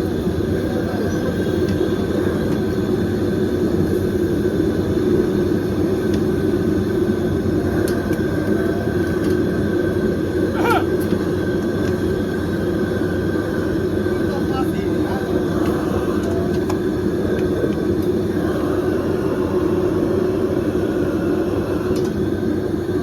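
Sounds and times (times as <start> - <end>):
mechanical rumble: 2.0 - 23.0
crowd noise: 7.3 - 23.0.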